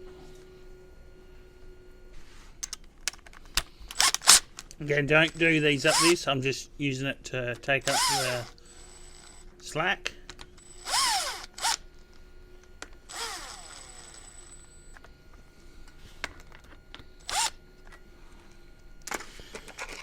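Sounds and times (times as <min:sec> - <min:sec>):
cordless drill running: 0:03.9 - 0:04.5, 0:05.2 - 0:06.2, 0:07.8 - 0:09.5, 0:10.6 - 0:11.9, 0:13.0 - 0:14.7, 0:17.2 - 0:17.6.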